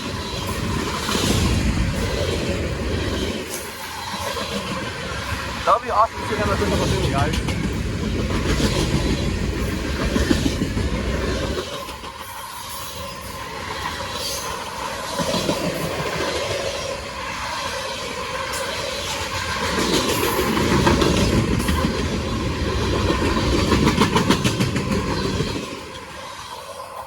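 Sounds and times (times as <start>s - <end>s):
train wheels clacking over rail joints: 18.5s - 25.9s.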